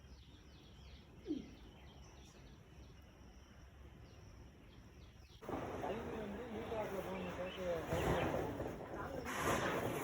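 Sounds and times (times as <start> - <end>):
low animal call: 1.2 - 1.7.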